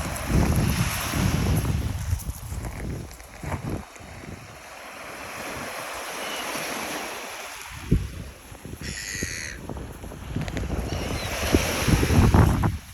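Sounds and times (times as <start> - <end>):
wind buffeting microphone: 0.0 - 4.6, 7.7 - 12.9
waves on the shore: 0.0 - 12.9
gull calling: 8.8 - 9.6.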